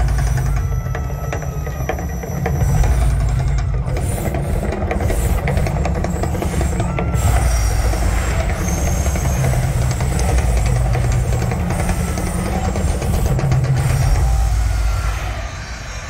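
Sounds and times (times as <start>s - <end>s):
deep continuous rumble: 0.0s - 16.0s.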